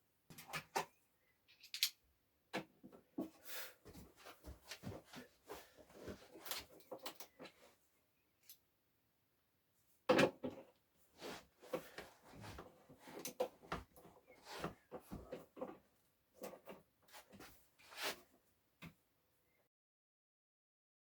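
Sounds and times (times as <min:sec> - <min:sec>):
small clicks and knocks of hardware: 0:01.5 - 0:02.0.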